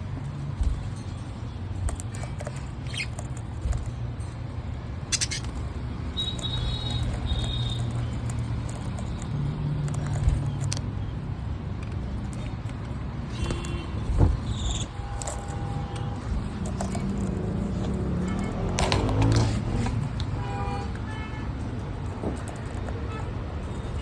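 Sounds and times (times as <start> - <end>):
parrots chirping: 2.8 - 3.3, 5.0 - 7.8, 14.5 - 15.0.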